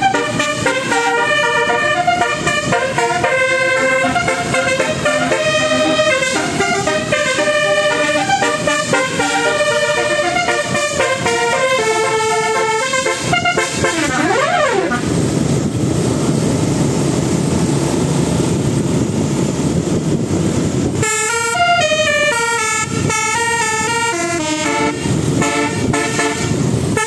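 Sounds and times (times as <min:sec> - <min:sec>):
multi-tone bus air horn melody: 0:00.0 - 0:15.3, 0:20.9 - 0:27.0
steady rushing noise: 0:00.0 - 0:27.0.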